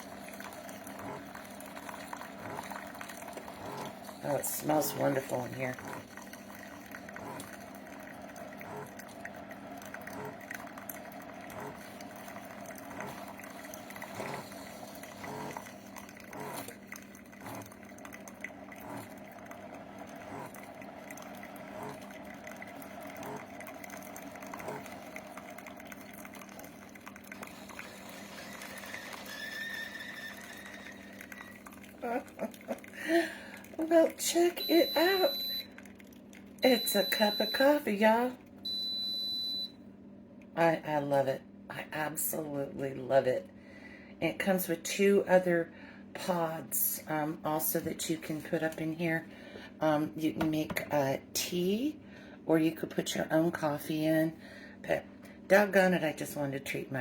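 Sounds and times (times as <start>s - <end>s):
coffee running into mug: 0.0s - 39.0s
coffee maker pump hum: 0.0s - 57.0s.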